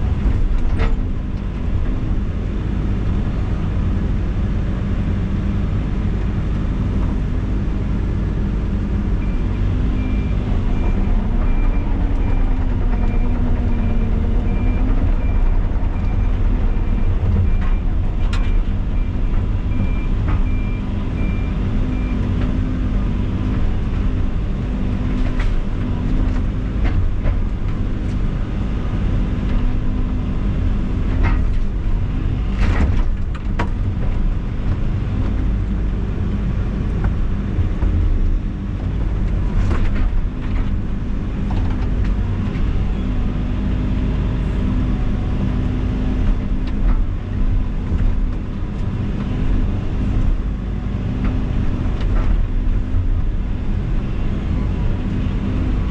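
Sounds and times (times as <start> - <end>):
diesel engine running under load: 0.0 - 55.9.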